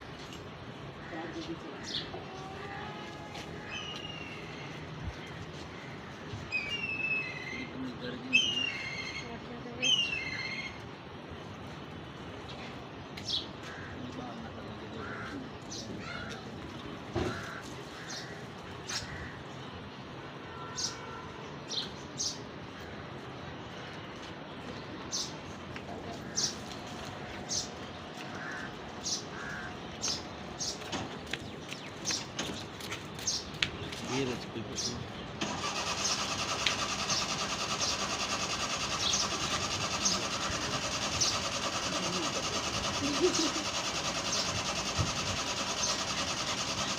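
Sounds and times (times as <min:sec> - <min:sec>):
birds calling: 0:00.0 - 0:11.0, 0:12.4 - 0:46.9
steady background noise: 0:00.0 - 0:46.9
car engine running: 0:35.4 - 0:46.9.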